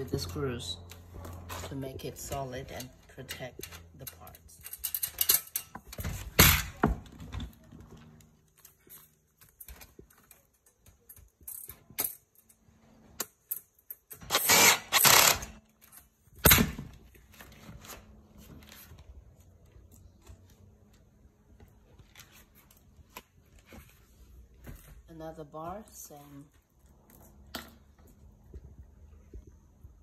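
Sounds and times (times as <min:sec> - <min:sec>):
metal bars clicking and clinking: 0:01.4 - 0:06.2.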